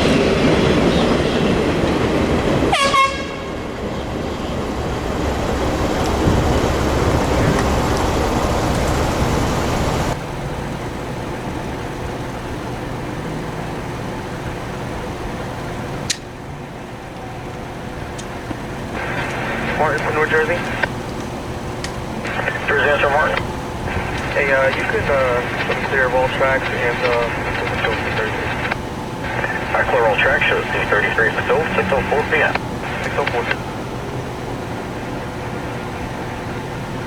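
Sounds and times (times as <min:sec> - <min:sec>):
train rumbling past: 0:00.0 - 0:15.6
locomotive horn: 0:02.6 - 0:03.7.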